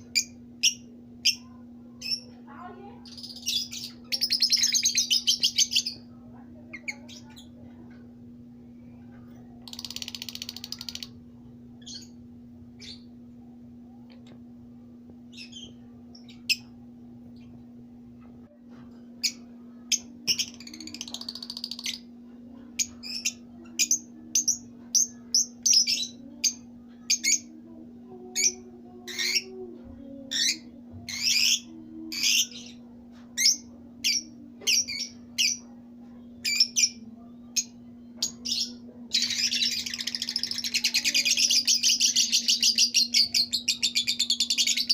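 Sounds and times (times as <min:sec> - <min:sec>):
buzzy bird chatter: 0:00.0 - 0:06.1, 0:09.6 - 0:11.2, 0:19.2 - 0:22.1, 0:37.6 - 0:44.9
low hum: 0:00.0 - 0:44.9.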